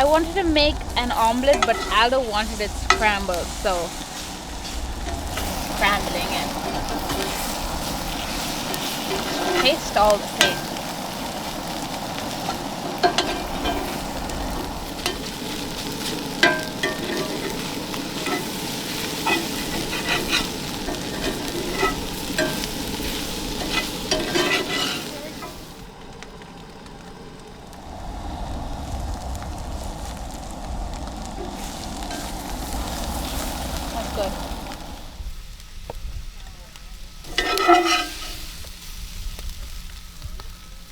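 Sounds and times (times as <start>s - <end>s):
low rumble: 0.0s - 24.4s, 25.0s - 40.5s
spatula scraping and tapping pan: 0.0s - 25.8s, 37.3s - 38.7s
eggs sizzling in a frying pan: 0.0s - 40.9s.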